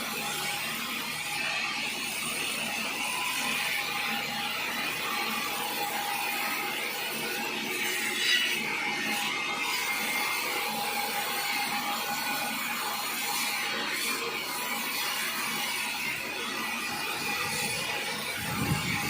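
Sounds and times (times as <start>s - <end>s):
sawmill saw grinding through log: 0.0s - 19.0s
saw scraping: 4.9s - 19.0s.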